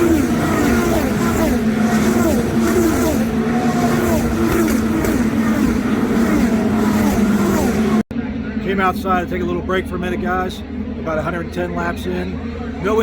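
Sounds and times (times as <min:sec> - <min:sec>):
steady drone: 0:00.0 - 0:08.0
race cars passing at full speed: 0:00.0 - 0:08.8.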